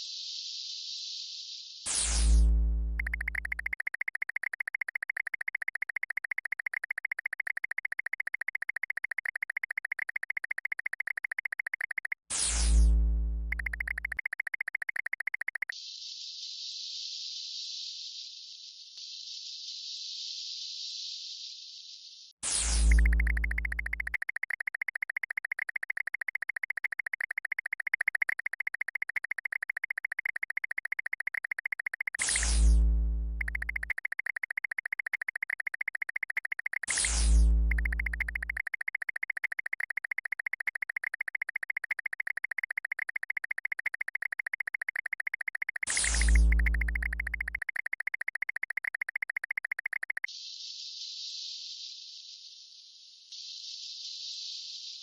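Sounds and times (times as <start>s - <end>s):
buzzing electronic tone: 1.9s - 15.7s, 22.5s - 50.3s.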